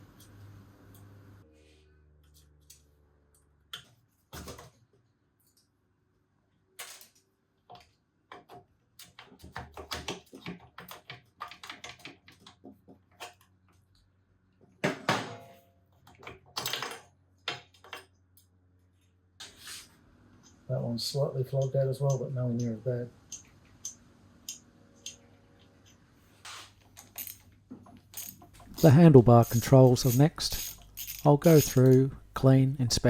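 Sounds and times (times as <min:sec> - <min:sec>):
hand tools clinking on metal: 0:28.2 - 0:32.1.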